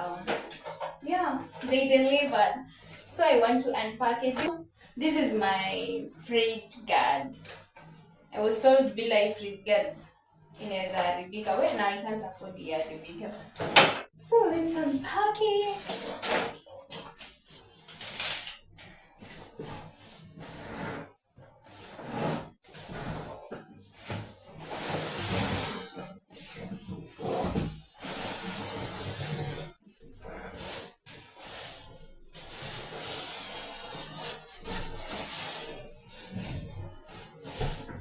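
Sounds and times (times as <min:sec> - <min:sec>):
packaging rustling and tearing: 0:15.8 - 0:18.7.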